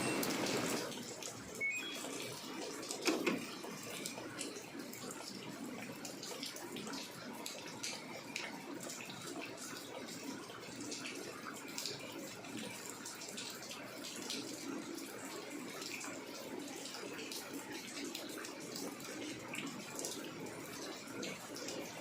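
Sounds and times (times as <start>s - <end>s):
water splashing in washing machine: 0.0s - 22.0s.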